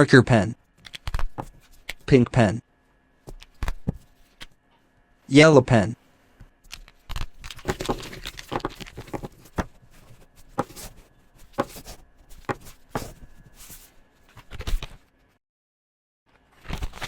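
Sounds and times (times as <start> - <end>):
marker pen scratching on paper: 1.4 - 1.9, 7.6 - 13.9.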